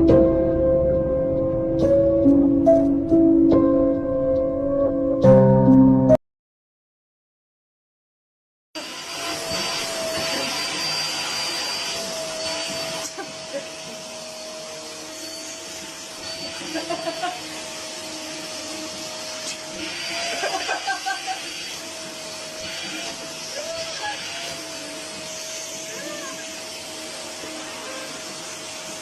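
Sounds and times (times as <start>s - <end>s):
small electric motor whining: 8.8s - 29.0s.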